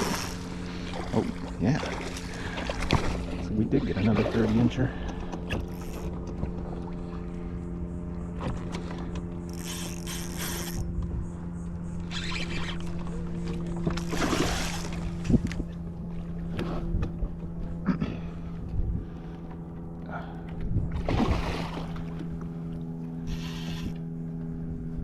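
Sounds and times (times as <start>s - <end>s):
water splashes: 0.0s - 5.1s, 12.6s - 15.5s, 20.9s - 22.8s
boat motor humming: 0.0s - 25.0s.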